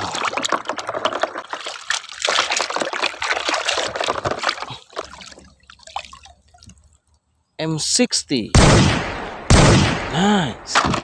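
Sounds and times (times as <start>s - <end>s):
water splashing and trickling: 0.0s - 7.9s.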